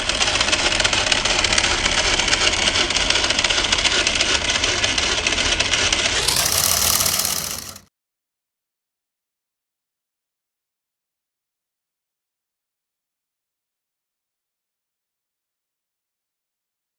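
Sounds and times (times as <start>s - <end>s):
motor running with fast rattle: 0.0s - 7.9s.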